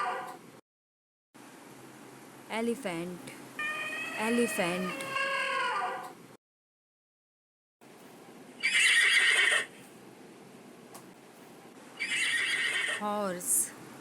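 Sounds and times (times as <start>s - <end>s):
horse whinnying: 8.6s - 9.7s, 12.0s - 13.0s.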